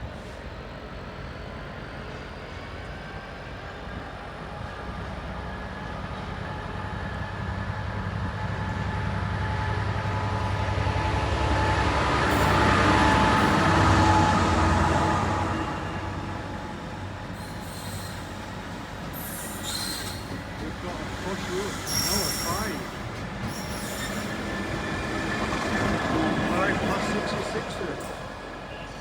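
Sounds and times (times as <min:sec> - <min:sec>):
train rumbling: 0:00.0 - 0:29.0
wheels squealing on rails: 0:11.7 - 0:29.0.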